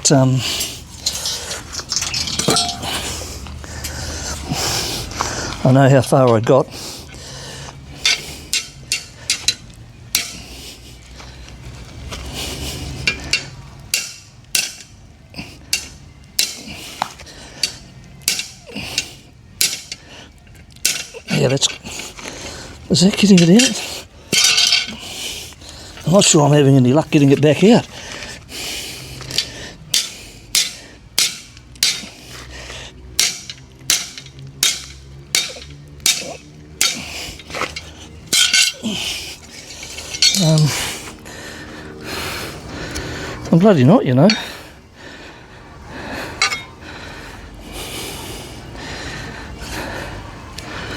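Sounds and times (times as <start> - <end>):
metal blade socket being struck: 18.2 - 18.6, 29.4 - 32.1, 33.2 - 38.8.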